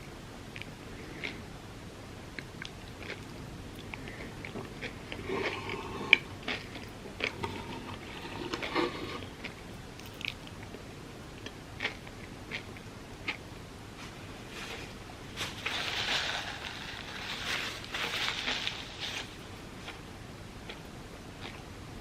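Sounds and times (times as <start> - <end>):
chewing with wet clicks: 0.5 - 1.4, 2.4 - 5.2, 6.4 - 7.4, 9.4 - 13.4, 20.6 - 21.6.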